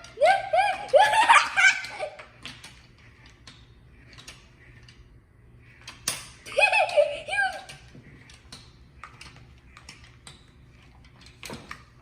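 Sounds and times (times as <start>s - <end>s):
child giggling: 0.0s - 2.4s, 6.4s - 7.8s.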